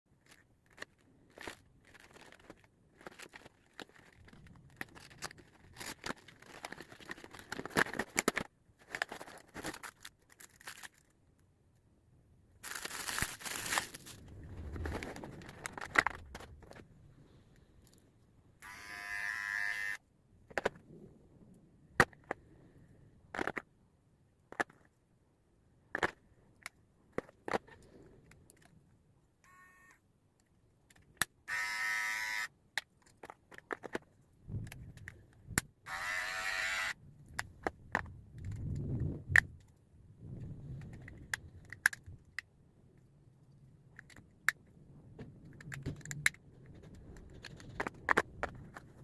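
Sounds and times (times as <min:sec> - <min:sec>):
plastic and cardboard crinkling: 0:00.1 - 0:11.2, 0:12.6 - 0:17.0, 0:32.9 - 0:35.2, 0:45.2 - 0:49.0
hair trimmer buzz: 0:18.6 - 0:20.0, 0:31.5 - 0:32.5, 0:35.9 - 0:37.0
parts clicking and knocking: 0:43.9 - 0:49.0.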